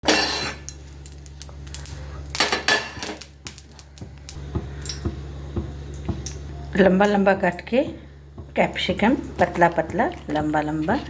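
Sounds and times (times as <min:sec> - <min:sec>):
steady low hum: 0:00.1 - 0:11.0
dishes and utensils clattering: 0:02.3 - 0:03.2.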